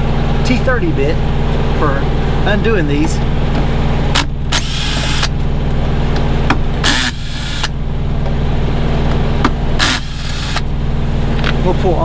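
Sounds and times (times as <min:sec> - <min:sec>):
diesel truck engine idling: 0:00.0 - 0:12.0
cordless drill running: 0:04.5 - 0:05.4, 0:06.8 - 0:07.8, 0:09.8 - 0:10.7.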